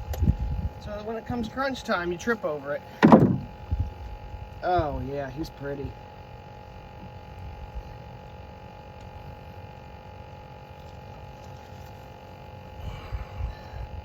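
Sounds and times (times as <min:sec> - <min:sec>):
low uneven rumble: 0:00.0 - 0:08.4
electrical hum: 0:00.0 - 0:14.0.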